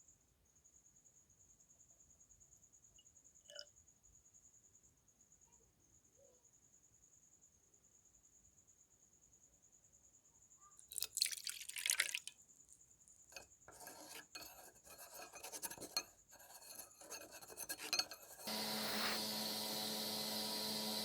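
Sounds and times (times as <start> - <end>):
scraping on hard part: 13.7 - 19.4
small electric motor humming: 18.4 - 21.0.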